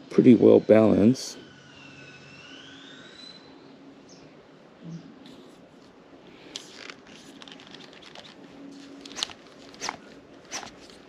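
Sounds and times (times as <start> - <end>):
fishing reel soft clicks and rustles: 5.3 - 11.0.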